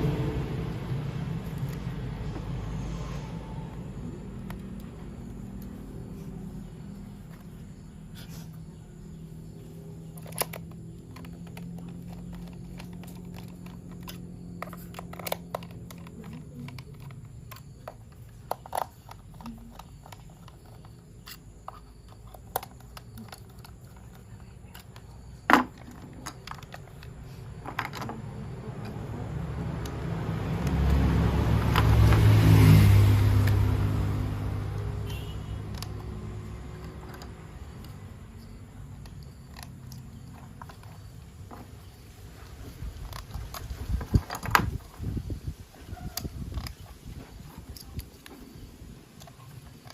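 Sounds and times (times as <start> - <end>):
low rumbling noise: 0.0 - 8.1
plastic toy parts clicking: 10.0 - 28.2, 35.7 - 41.8.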